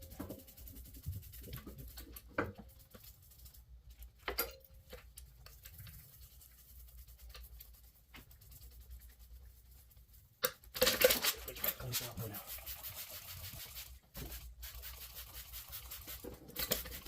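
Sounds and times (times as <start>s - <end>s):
brush scrubbing metal: 0.0s - 4.2s, 4.9s - 17.0s.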